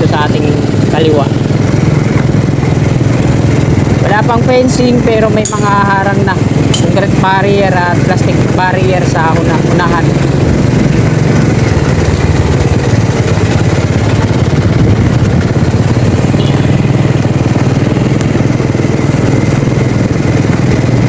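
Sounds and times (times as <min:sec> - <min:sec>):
small motorcycle engine running: 0:00.0 - 0:21.0.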